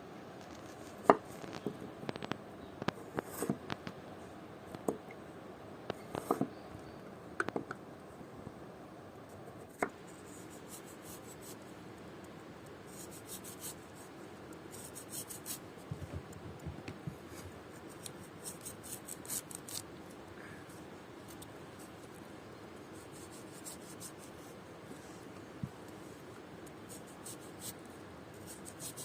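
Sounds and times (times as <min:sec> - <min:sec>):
scratchy scraping strokes: 0:17.3 - 0:19.8, 0:28.4 - 0:29.0.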